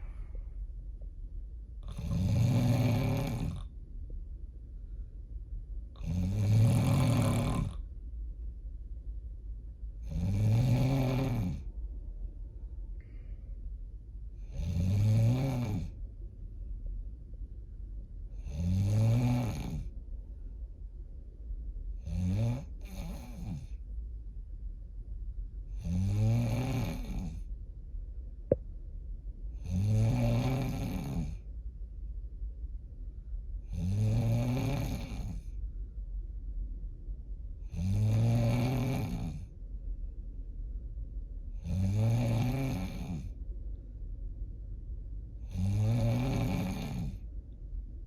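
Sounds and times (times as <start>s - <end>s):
person snoring: 1.9s - 3.6s, 6.0s - 7.8s, 10.1s - 11.6s, 14.5s - 15.9s, 18.4s - 19.9s, 25.8s - 27.4s, 29.7s - 31.4s, 33.7s - 35.4s, 37.8s - 39.4s, 41.6s - 43.3s, 45.5s - 47.2s.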